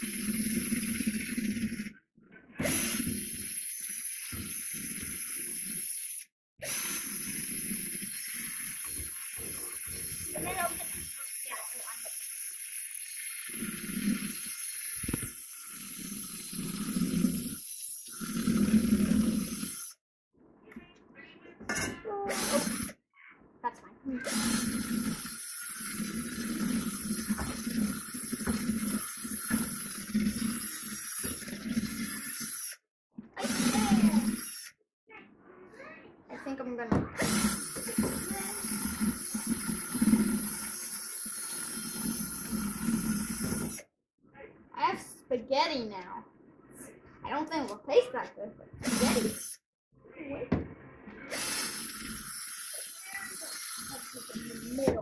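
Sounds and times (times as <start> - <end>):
electric drill churning pumpkin guts: 0.0 - 1.9, 6.6 - 20.0, 22.3 - 23.0, 24.2 - 32.8, 33.4 - 34.7, 37.2 - 43.9, 48.8 - 49.5, 51.3 - 55.0.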